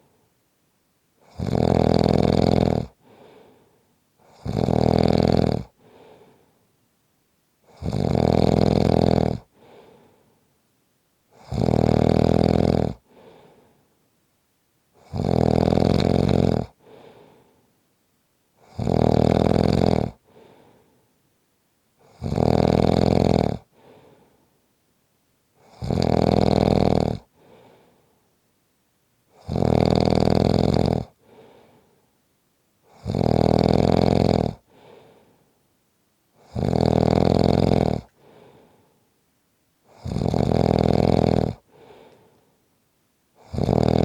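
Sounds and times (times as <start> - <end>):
faint breath: 0.0 - 0.4, 3.0 - 4.3, 5.8 - 6.8, 9.5 - 10.6, 13.0 - 14.1, 16.7 - 17.8, 20.2 - 21.2, 23.6 - 24.6, 27.3 - 28.4, 31.1 - 32.2, 34.6 - 35.6, 38.0 - 39.2, 41.6 - 42.7
person snoring loudly: 1.2 - 3.0, 4.2 - 5.8, 7.7 - 9.5, 11.4 - 13.3, 15.0 - 17.0, 18.6 - 20.2, 22.0 - 23.8, 25.6 - 27.6, 29.3 - 31.6, 32.9 - 35.0, 36.4 - 38.4, 39.9 - 42.0, 43.4 - 44.0.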